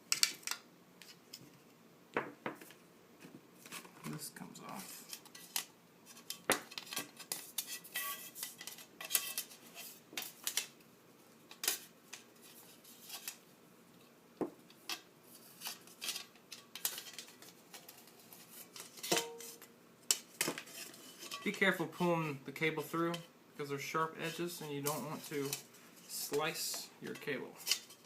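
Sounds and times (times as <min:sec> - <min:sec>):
plastic parts clicking and scraping: 0:14.8 - 0:21.5.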